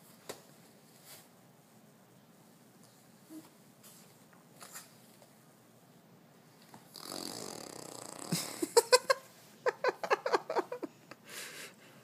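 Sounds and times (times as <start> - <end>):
baby blowing a raspberry: 6.9 - 8.4.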